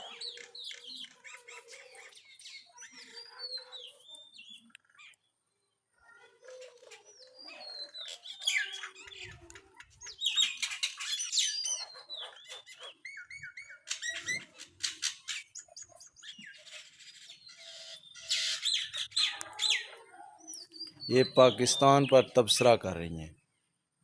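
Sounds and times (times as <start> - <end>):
birds chattering: 0.0 - 23.8.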